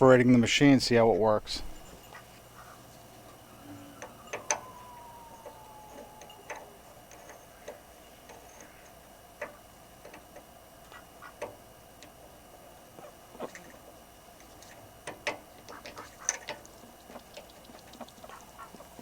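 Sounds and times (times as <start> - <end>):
tone sliding down in pitch: 3.4 - 7.7.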